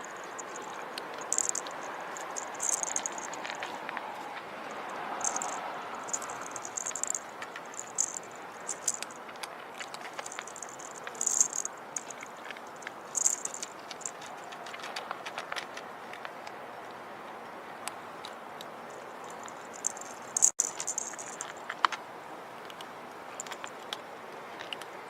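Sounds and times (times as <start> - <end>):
toy jingling: 0.0 - 3.6, 4.7 - 9.2, 10.0 - 14.3, 19.2 - 21.6
rattle toy clicking and rattling: 0.0 - 3.7, 4.7 - 15.1, 19.2 - 21.7.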